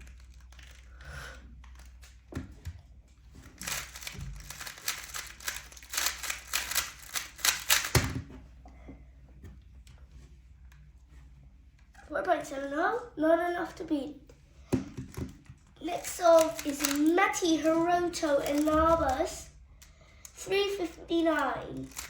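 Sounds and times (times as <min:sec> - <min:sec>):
puzzle cube plastic clicks: 0:03.5 - 0:08.2, 0:15.0 - 0:22.0.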